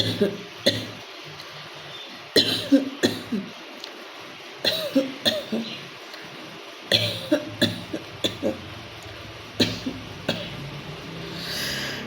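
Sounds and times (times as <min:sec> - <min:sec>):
woman coughing: 0:00.0 - 0:01.0, 0:02.4 - 0:03.5, 0:04.7 - 0:05.7, 0:06.9 - 0:08.6.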